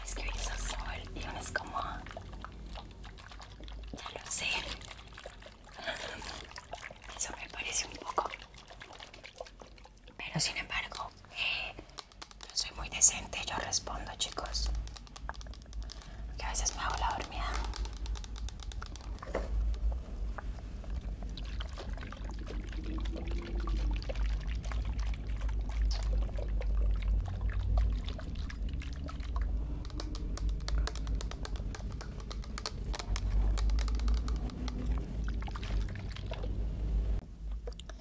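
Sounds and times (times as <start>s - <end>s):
water pouring and splashing: 0.0s - 10.4s, 14.6s - 36.6s
small clicks: 14.2s - 20.0s, 29.7s - 34.9s.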